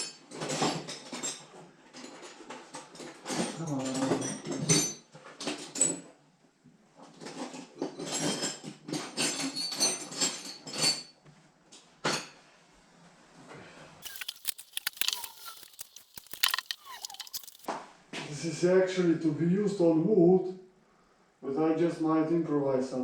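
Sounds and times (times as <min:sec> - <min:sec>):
small metal items clattering: 0:14.0 - 0:17.7.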